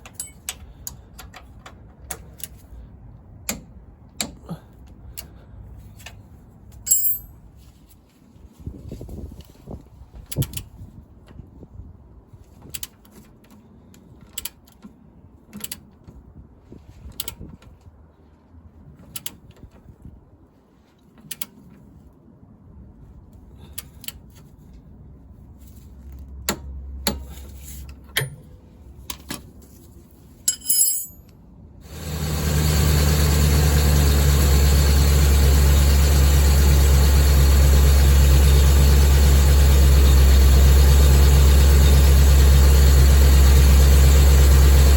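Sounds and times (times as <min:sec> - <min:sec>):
sharp clicks and knocks: 0:03.4 - 0:04.4
car engine starting and idling: 0:31.8 - 0:44.9.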